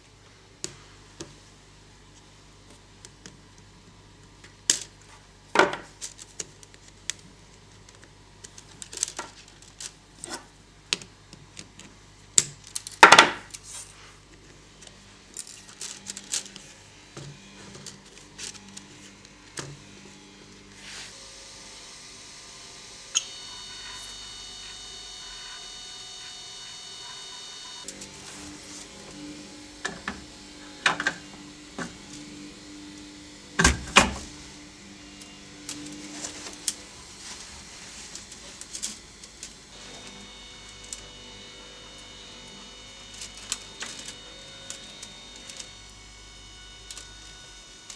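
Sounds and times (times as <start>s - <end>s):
clicks and clatter of plastic parts: 7.8s - 13.8s, 14.8s - 19.8s
mechanical whine: 12.5s - 47.9s.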